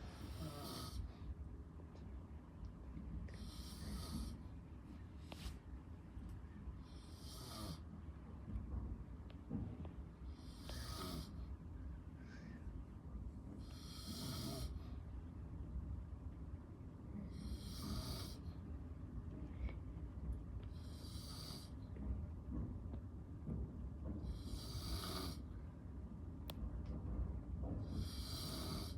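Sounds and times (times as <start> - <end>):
man snoring: 0.3 - 1.0, 10.5 - 11.3, 13.8 - 14.8, 24.5 - 25.4, 28.1 - 28.9.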